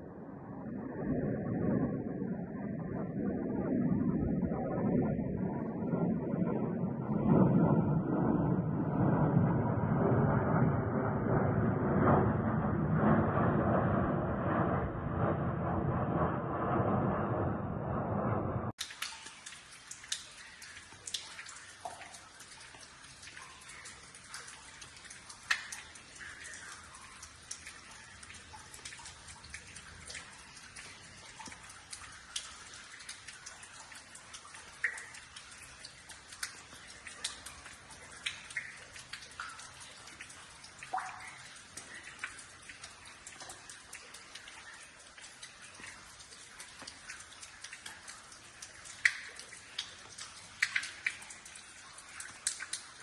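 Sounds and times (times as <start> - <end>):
water dripping: 18.7 - 53.0.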